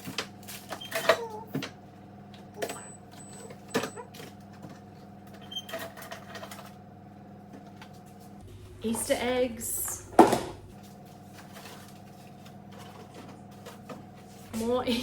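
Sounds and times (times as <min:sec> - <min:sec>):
plastic containers clattering: 0:10.2 - 0:14.8.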